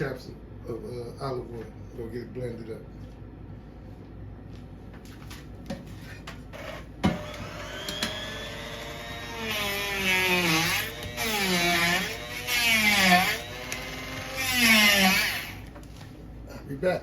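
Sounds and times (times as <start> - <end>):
blender motor whining in pulses: 6.6 - 15.7.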